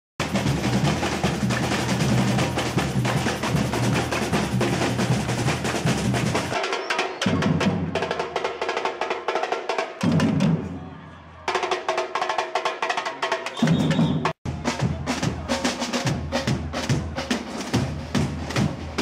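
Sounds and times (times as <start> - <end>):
bass drum beats: 0.2 - 6.6
snare drum rolls: 0.2 - 10.7, 13.4 - 19.0.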